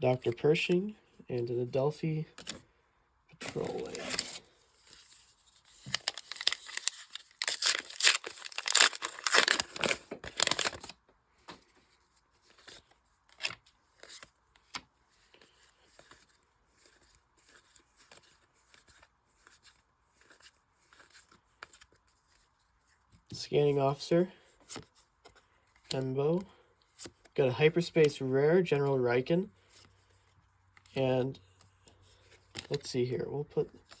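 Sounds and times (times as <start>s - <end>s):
cards rustling: 2.3s - 2.6s, 3.4s - 23.1s, 29.6s - 33.0s, 33.6s - 34.0s
wrapper tearing and crinkling: 3.4s - 4.4s, 5.7s - 11.0s.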